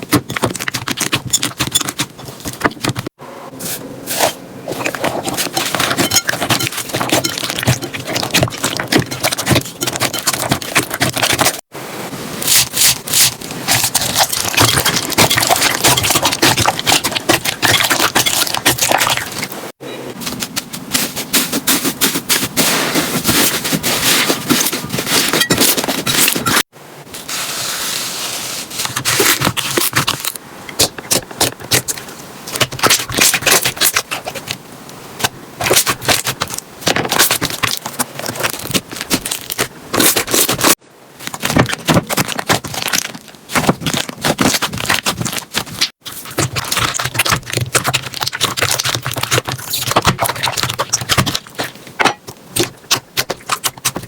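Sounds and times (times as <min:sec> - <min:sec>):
slime scraping: 0:00.0 - 0:11.7, 0:12.4 - 0:34.6, 0:35.2 - 0:54.0
slime crackling and popping: 0:35.6 - 0:51.7.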